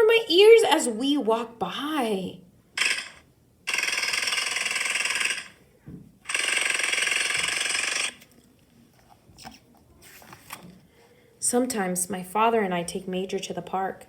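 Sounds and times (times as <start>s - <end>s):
jackhammer rapid hammering: 2.8s - 5.6s, 6.3s - 8.2s.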